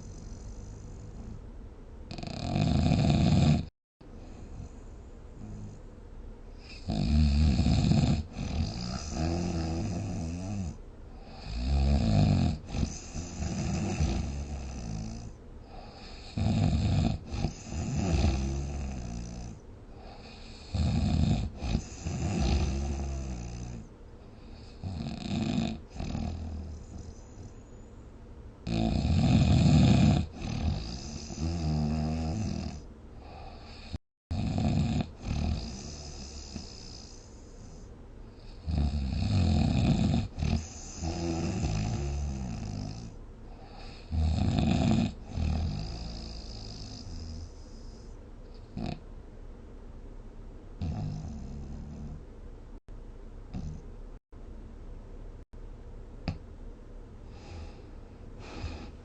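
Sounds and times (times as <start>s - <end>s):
person snoring heavily: 2.1s - 3.7s, 6.6s - 23.9s, 24.5s - 27.5s, 28.6s - 48.2s, 48.8s - 49.0s, 50.8s - 52.2s, 57.3s - 59.0s.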